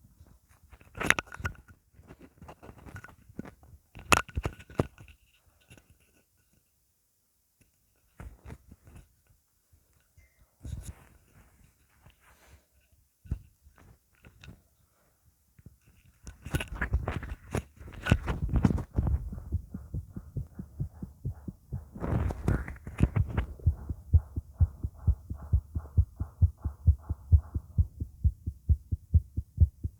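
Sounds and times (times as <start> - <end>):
rustling noise: 15.8 - 29.9
heartbeat thumps: 18.4 - 29.9.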